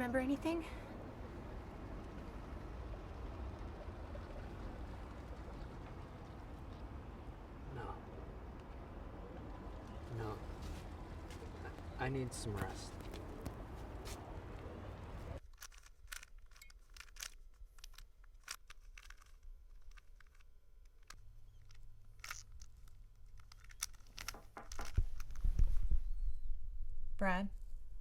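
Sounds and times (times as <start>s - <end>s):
faint steady hum: 0.0s - 15.4s
clicks and rustling handling: 15.4s - 25.8s.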